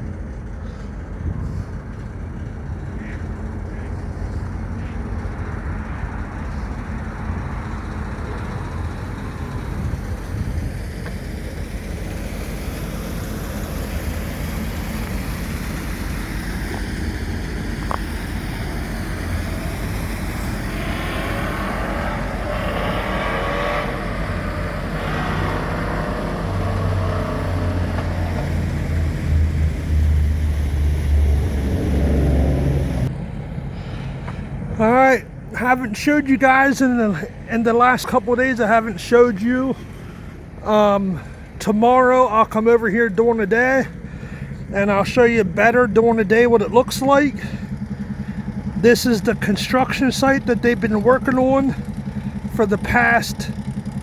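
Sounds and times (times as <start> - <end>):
road traffic rumble: 0.0 - 54.0
vehicle passing: 0.4 - 41.6.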